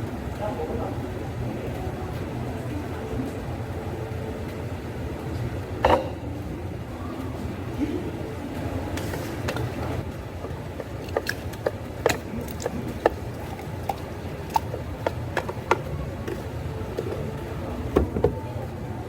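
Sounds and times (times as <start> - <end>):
steady low hum: 0.0 - 19.0
cups and utensils clinking: 5.8 - 6.4, 8.9 - 18.6.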